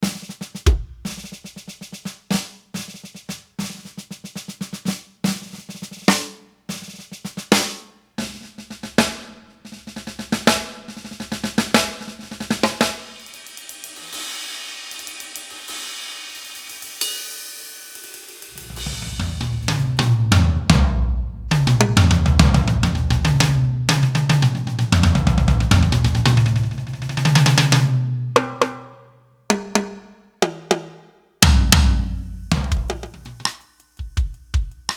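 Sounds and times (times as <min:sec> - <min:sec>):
snare and kick drum groove: 0:00.0 - 0:14.1, 0:18.5 - 0:28.8, 0:29.5 - 0:34.9
deep tom drum strokes: 0:00.7 - 0:01.5, 0:18.6 - 0:26.9, 0:31.4 - 0:34.9
cymbal wash: 0:11.9 - 0:20.2, 0:31.8 - 0:33.9.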